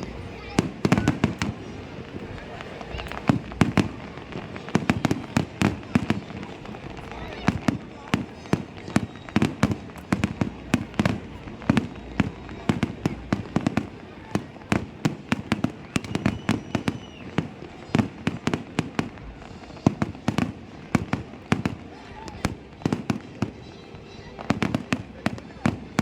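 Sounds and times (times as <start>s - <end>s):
fireworks bangs: 0.0s - 26.0s.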